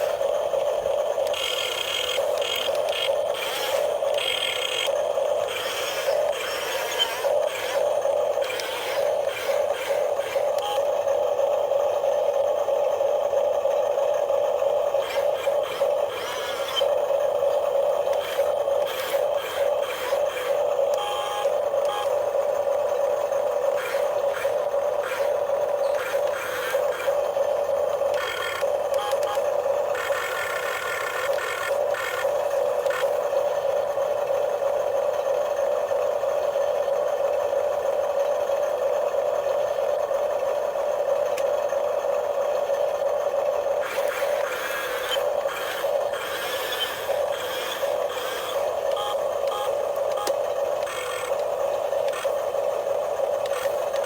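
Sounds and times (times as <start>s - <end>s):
scraping and rattling clicks: 0.0s - 10.6s, 43.8s - 52.4s, 53.4s - 54.0s
small electric motor whining: 0.0s - 34.3s, 42.6s - 54.0s.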